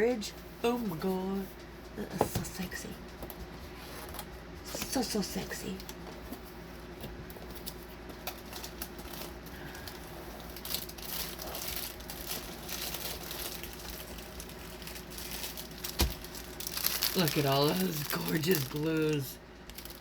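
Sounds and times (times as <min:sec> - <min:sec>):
plastic packaging crinkling: 0:07.4 - 0:20.0.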